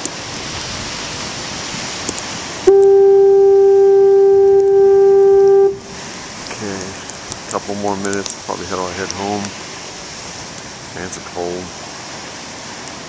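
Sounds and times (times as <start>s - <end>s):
foghorn low note: 2.6s - 6.0s.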